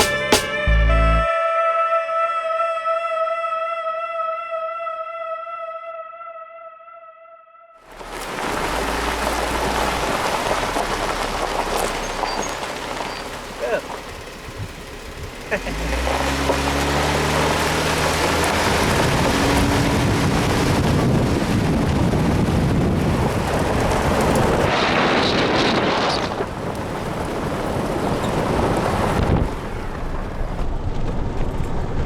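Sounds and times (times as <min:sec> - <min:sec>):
wind and road noise: 0:07.8 - 0:32.0
vehicle engine running: 0:07.9 - 0:32.0.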